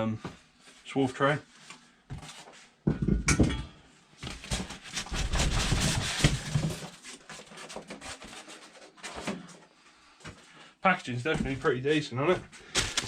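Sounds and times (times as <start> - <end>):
packaging scraping and rustling: 4.3 - 9.4, 12.6 - 13.0.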